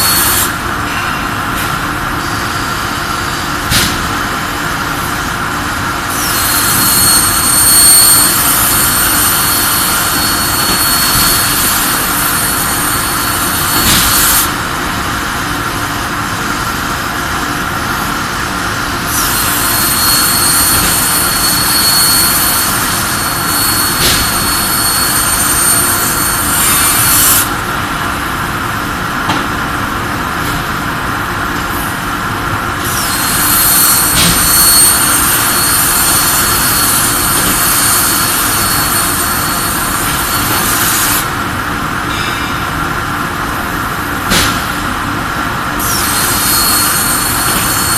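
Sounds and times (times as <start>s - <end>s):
plasma cutter torch hissing: 0.0s - 14.6s, 19.0s - 27.6s, 32.8s - 41.4s, 45.8s - 47.9s
machinery drone: 0.0s - 47.9s.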